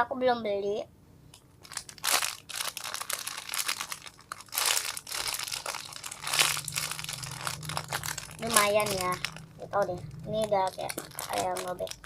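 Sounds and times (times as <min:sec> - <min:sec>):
plastic packaging crinkling: 0:01.6 - 0:12.0.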